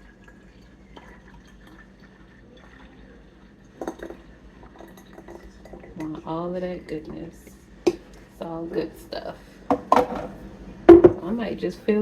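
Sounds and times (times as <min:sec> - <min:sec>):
juice pouring into a bottle: 0:00.0 - 0:06.1.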